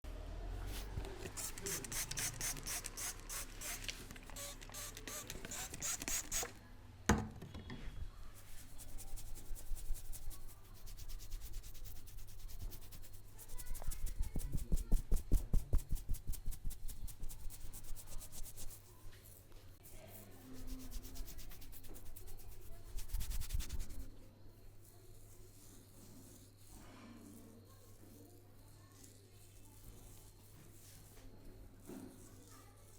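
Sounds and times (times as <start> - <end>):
hands rubbing and patting hair: 0.7 - 5.5, 8.4 - 19.4, 20.6 - 24.1.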